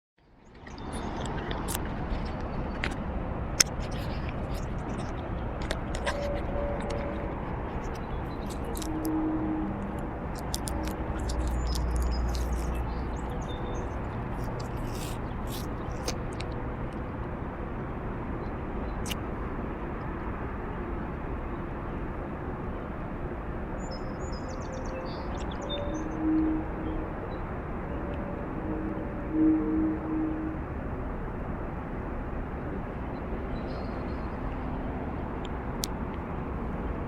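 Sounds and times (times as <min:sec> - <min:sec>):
distant highway traffic: 0:00.2 - 0:37.0
birds chirping: 0:03.6 - 0:16.5, 0:23.8 - 0:29.9
low hollow tones: 0:03.6 - 0:16.6, 0:25.7 - 0:30.8.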